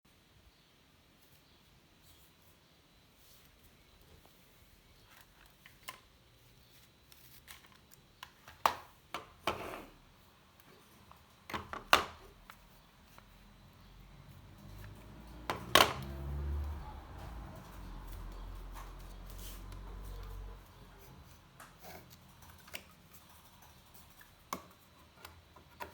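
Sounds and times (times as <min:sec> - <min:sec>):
handling clicks and knocks: 0:14.6 - 0:16.3.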